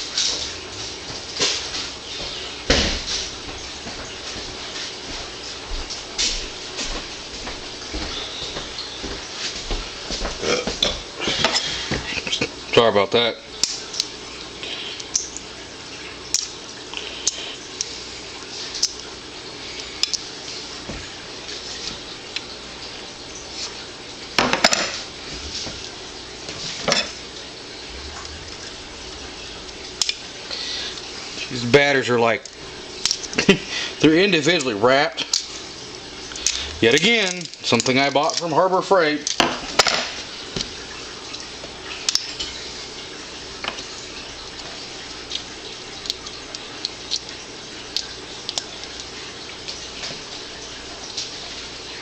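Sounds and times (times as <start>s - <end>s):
low steady hum: 0.0s - 52.0s.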